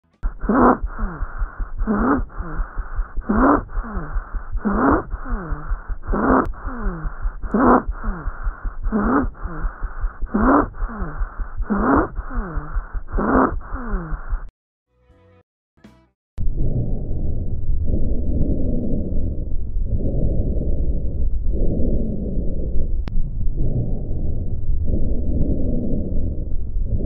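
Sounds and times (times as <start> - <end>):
lung sounds through stethoscope: 0.2 - 14.5, 16.4 - 27.0.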